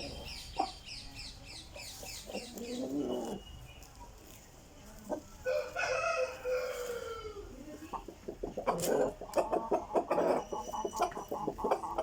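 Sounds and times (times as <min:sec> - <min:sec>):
birds chirping: 0:00.0 - 0:04.6, 0:09.9 - 0:12.0
rooster crowing: 0:05.4 - 0:07.4.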